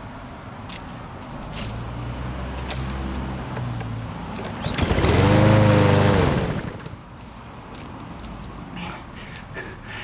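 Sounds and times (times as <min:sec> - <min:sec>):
lawnmower engine running: 0:03.2 - 0:07.1.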